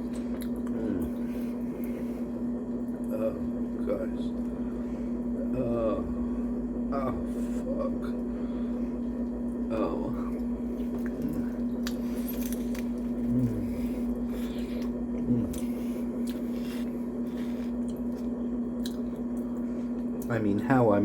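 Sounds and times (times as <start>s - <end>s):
wet squishy chewing: 0.0s - 2.0s, 10.2s - 20.4s
steady hum: 0.0s - 21.0s
low murmurs: 0.6s - 12.3s, 13.0s - 16.2s.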